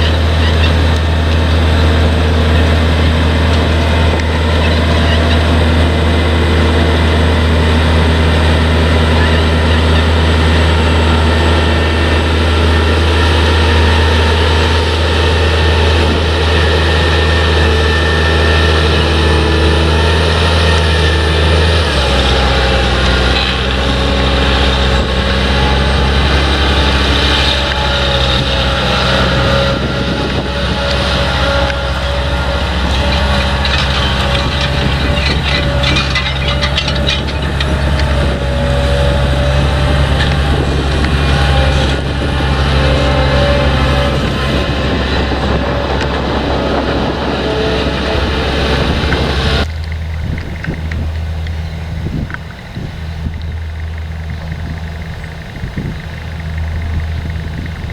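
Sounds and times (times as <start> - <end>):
harvesting machinery engine hum: 0.0 - 57.9
faint rattling: 31.0 - 39.6.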